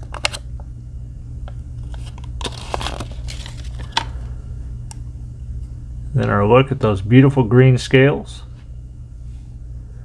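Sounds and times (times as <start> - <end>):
low hum: 0.0 - 10.0
paper rustling and crinkling: 1.8 - 4.2.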